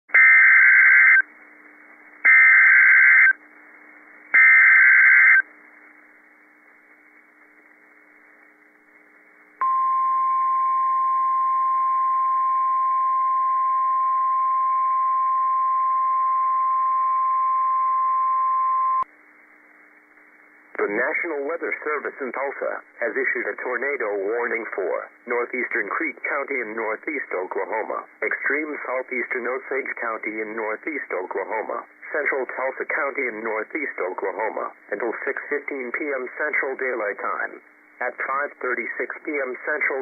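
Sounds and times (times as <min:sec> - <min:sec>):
steady alarm tone: 0:00.1 - 0:01.2, 0:02.3 - 0:03.4, 0:04.4 - 0:05.4
digital header tone bursts: 0:04.4 - 0:05.4.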